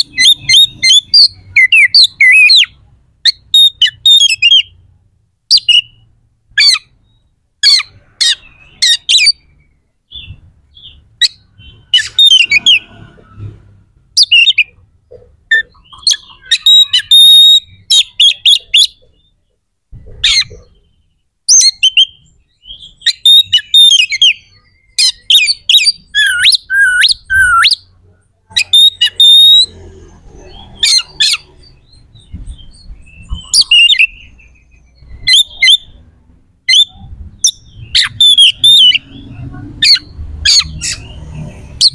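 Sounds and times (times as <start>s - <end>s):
magpie-robin singing: 0.0s - 13.0s, 14.1s - 41.9s.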